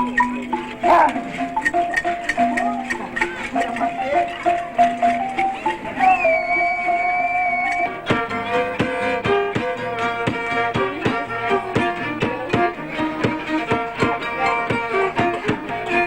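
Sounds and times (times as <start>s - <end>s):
fiddle-like bowed string melody: 0.0s - 16.0s.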